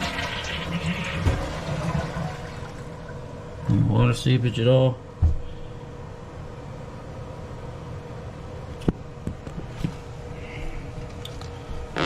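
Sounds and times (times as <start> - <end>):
toilet tank refilling: 0.0 - 3.4.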